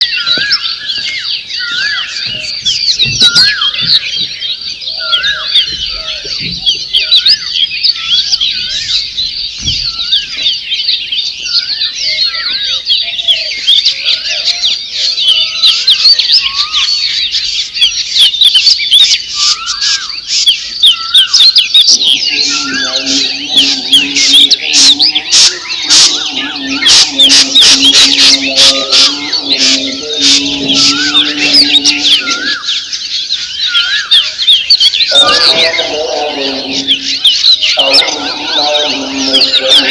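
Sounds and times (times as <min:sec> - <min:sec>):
birds chirping and singing: 0:00.0 - 0:39.9
low warbling bird note: 0:21.7 - 0:32.9, 0:35.1 - 0:39.9.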